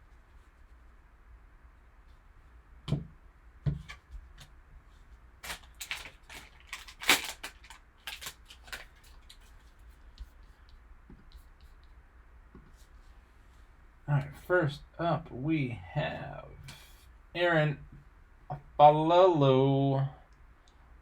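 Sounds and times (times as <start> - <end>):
dull knocks on box: 2.9 - 3.9
packaging tearing and crinkling: 5.4 - 9.5.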